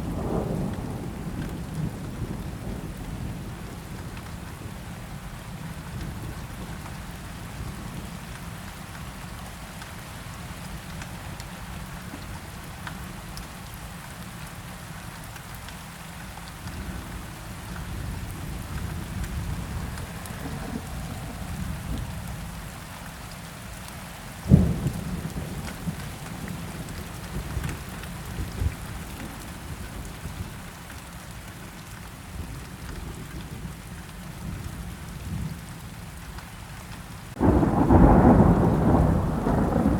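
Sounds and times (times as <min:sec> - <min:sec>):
thunder rumbling: 0:00.0 - 0:03.4, 0:16.8 - 0:22.8, 0:37.3 - 0:39.9
rain falling: 0:00.0 - 0:39.9
loud thunderclap: 0:37.3 - 0:39.9.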